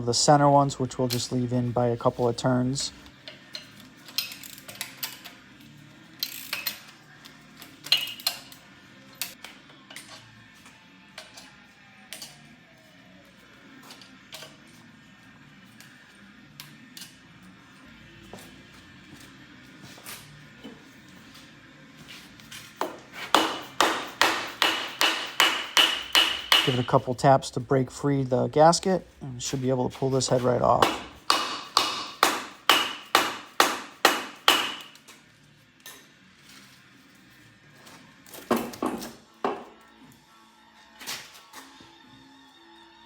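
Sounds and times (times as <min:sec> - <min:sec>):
hammer blows on metal: 0:23.3 - 0:27.0.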